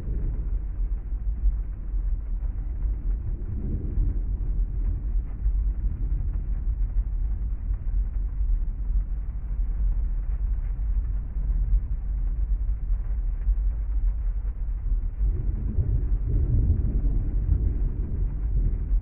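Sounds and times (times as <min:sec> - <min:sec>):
faint rain taps: 0:00.0 - 0:19.0
rain on a car: 0:00.0 - 0:19.0.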